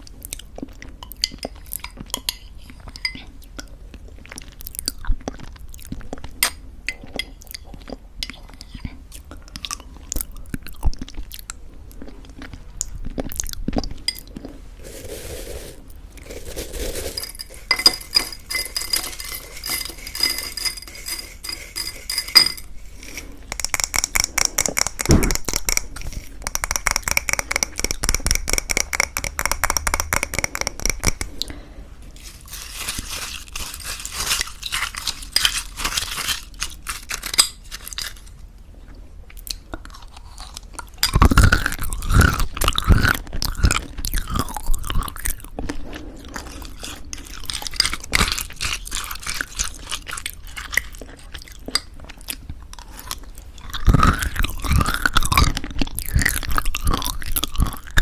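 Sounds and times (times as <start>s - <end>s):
spoon clinking and scraping in bowl: 1.0s - 3.3s, 14.0s - 31.4s, 32.2s - 38.3s
granola crunching: 32.2s - 38.4s.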